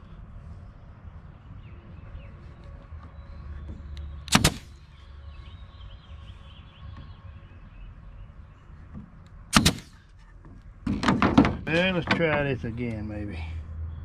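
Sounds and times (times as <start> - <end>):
sharp wooden knocks: 10.8 - 12.5.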